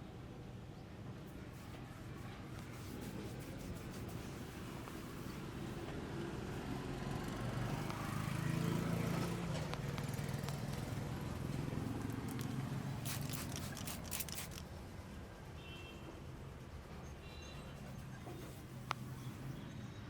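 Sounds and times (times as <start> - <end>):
low rumble of street traffic: 0.0 - 20.0
hands rubbing hair and scalp: 2.5 - 5.5, 11.8 - 14.6.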